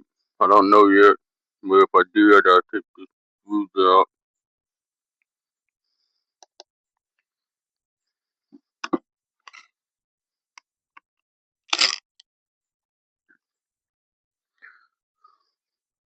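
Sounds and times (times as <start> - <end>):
small parts and tools clicking: 11.7 - 12.2.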